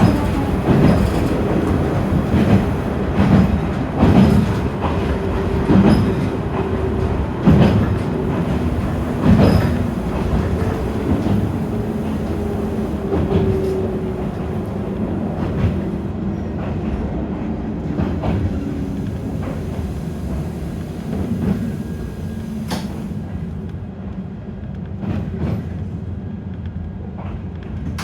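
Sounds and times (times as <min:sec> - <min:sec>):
wheels clicking over rail joints: 0:00.0 - 0:16.0
electric train rumbling: 0:00.0 - 0:28.0.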